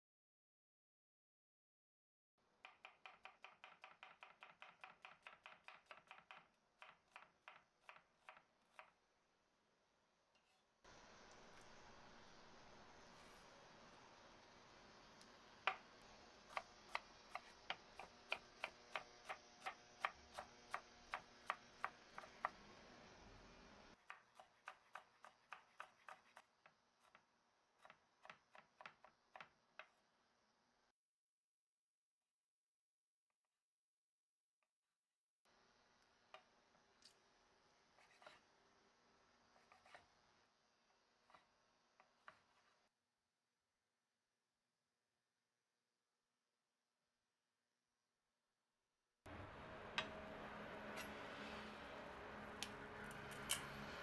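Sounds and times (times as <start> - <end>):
knife chopping on cutting board: 2.6 - 9.0, 16.5 - 22.6, 24.0 - 26.5, 39.6 - 40.1.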